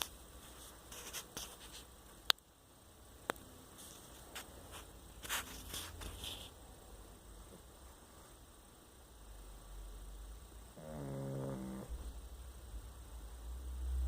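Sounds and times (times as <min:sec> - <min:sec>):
dog snoring: 0:10.7 - 0:12.2.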